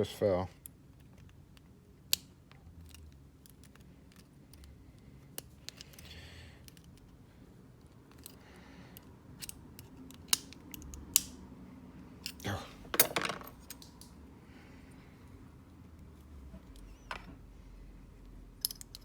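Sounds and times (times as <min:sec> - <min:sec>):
light clicks of metal lock parts: 0:00.6 - 0:07.2, 0:07.8 - 0:11.4, 0:18.6 - 0:19.0.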